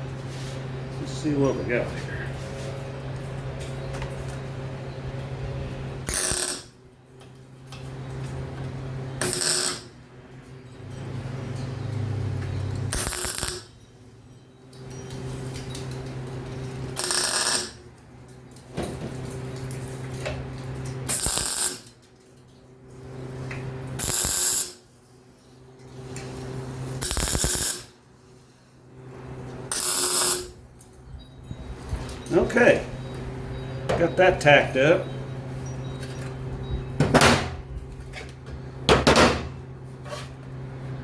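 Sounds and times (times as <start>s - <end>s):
steady hum: 0.0s - 21.9s
welding arc bursts: 6.0s - 6.7s, 9.2s - 9.9s, 12.8s - 13.7s, 16.6s - 17.9s, 21.0s - 22.0s, 23.9s - 24.8s, 26.0s - 28.0s, 29.7s - 30.6s.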